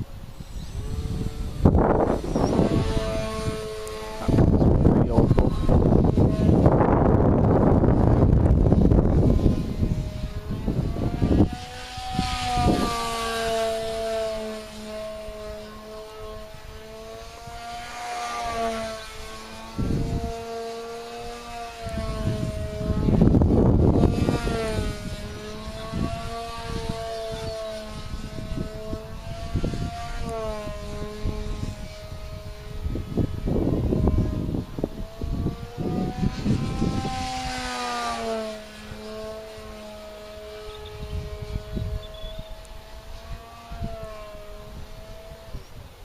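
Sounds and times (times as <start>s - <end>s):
model plane motor droning: 0.0s - 46.0s
wind buffeting microphone: 0.0s - 46.0s.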